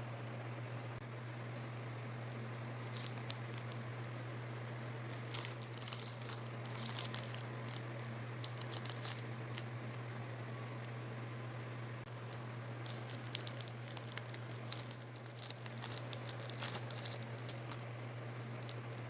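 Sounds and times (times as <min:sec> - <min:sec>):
low electrical hum: 0:00.0 - 0:19.0
plastic packaging crinkling: 0:02.3 - 0:04.1, 0:04.7 - 0:10.0, 0:12.1 - 0:19.0.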